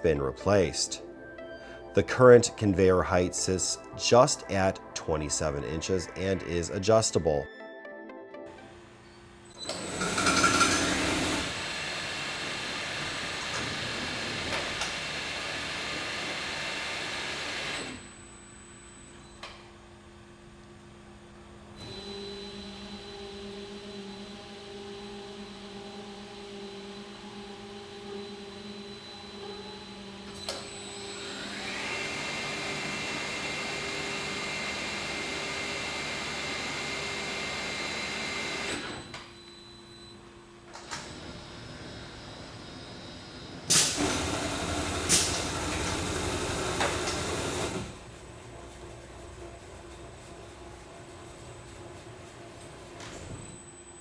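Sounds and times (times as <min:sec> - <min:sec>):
sharp pneumatic bursts: 0:43.7 - 0:44.3, 0:45.1 - 0:45.6.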